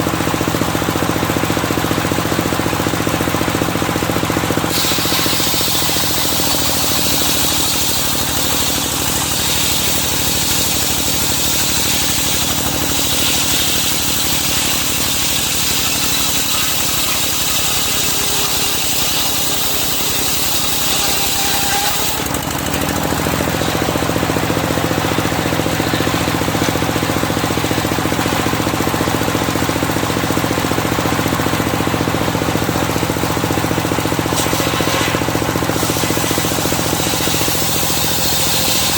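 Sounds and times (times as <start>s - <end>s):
engine chugging: 0.0s - 38.9s
saw cutting wood hiss: 4.7s - 22.4s, 34.2s - 38.9s.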